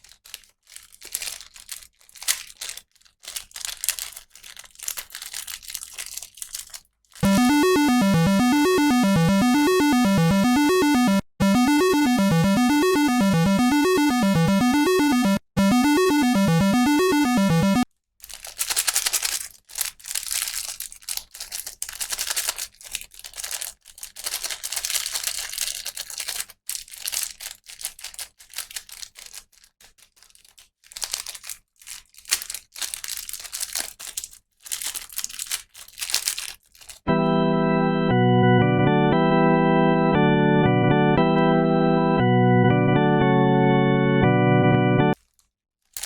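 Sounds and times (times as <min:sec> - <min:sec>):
plastic packaging crinkling and tearing: 0:00.0 - 0:07.2, 0:18.2 - 0:37.0, 0:45.2 - 0:46.0
bouncing synth tune: 0:07.2 - 0:17.8
organ-like chords: 0:07.2 - 0:17.8, 0:37.1 - 0:45.2.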